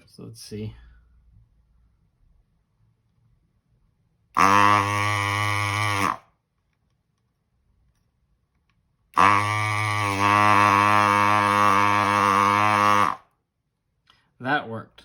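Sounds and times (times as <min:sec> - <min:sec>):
desoldering vacuum pump buzzing: 0:04.4 - 0:06.2, 0:09.2 - 0:13.2.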